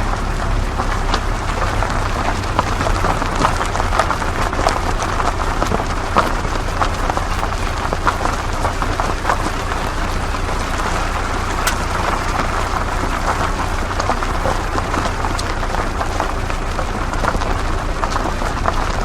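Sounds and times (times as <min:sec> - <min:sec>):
low vehicle rumble: 0:00.0 - 0:19.0
tyres crunching on gravel: 0:00.0 - 0:19.0.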